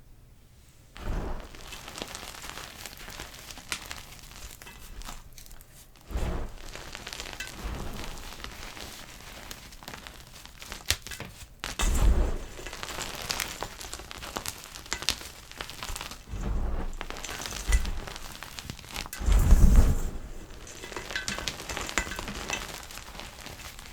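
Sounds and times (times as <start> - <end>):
chalk crumbling with crackles: 1.0 - 23.9.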